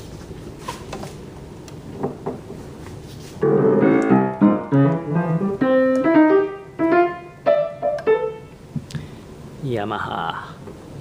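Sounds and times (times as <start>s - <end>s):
piano notes and chords: 3.4s - 8.6s.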